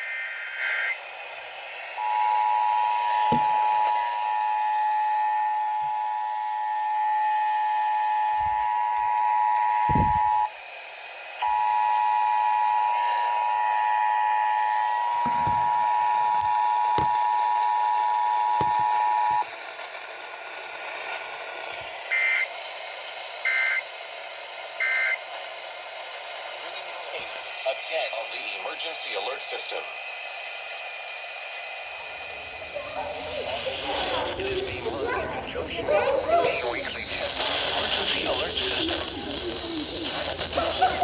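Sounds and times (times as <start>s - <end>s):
two-tone alert alarm: 2.0s - 10.5s.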